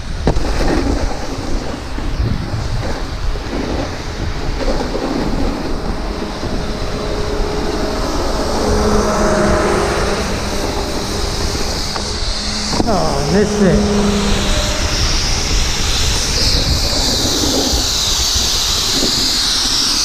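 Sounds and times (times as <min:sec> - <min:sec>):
snowboard scraping over snow: 0:00.0 - 0:20.0
wind noise on microphone: 0:00.0 - 0:20.0.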